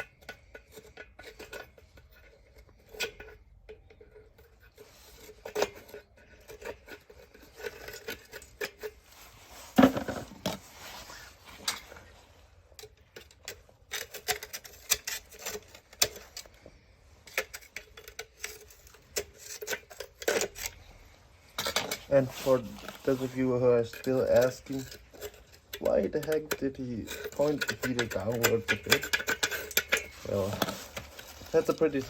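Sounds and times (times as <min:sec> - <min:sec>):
metal parts clinking and knocking: 0:23.6 - 0:32.0.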